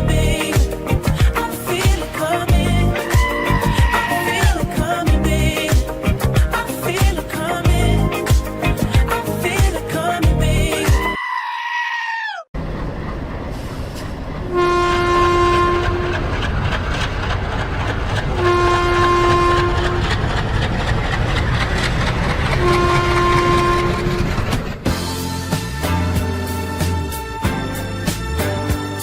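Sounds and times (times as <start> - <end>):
train rumbling: 0.0 - 11.2, 12.6 - 29.0
train horn blasts: 14.5 - 16.2, 18.4 - 20.1, 22.6 - 24.4.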